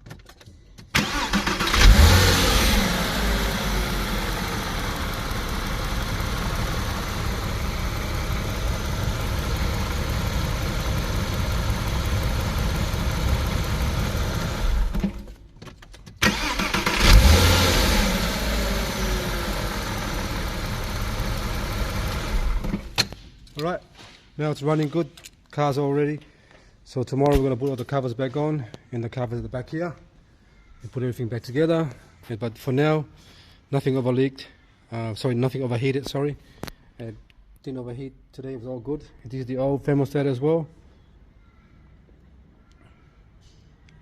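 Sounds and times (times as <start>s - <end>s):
car engine starting and idling: 0.9s - 15.4s, 16.2s - 23.1s.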